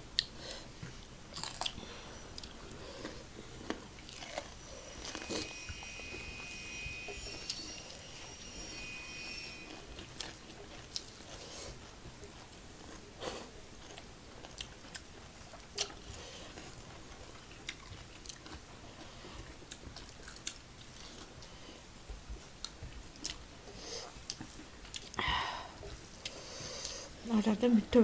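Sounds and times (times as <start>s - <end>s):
chewing and biting food: 0.2s - 4.5s, 12.8s - 21.3s.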